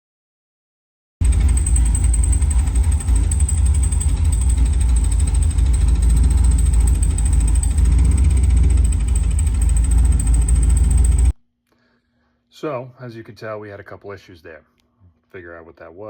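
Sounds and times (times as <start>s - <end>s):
car engine rumbling: 1.2s - 11.3s
high whine: 1.2s - 11.3s.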